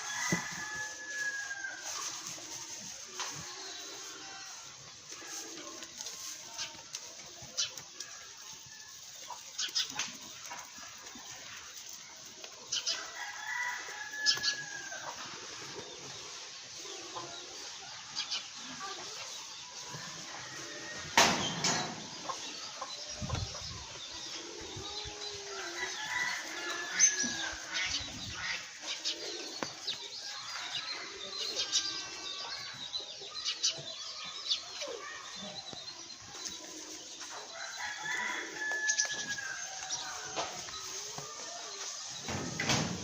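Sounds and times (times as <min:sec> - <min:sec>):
chickens clucking: 0:00.0 - 0:43.0.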